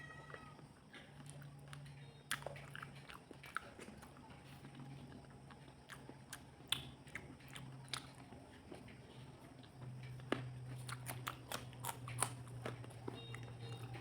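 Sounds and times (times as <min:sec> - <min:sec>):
low steady hum: 0:00.0 - 0:14.0
person chewing: 0:01.0 - 0:14.0.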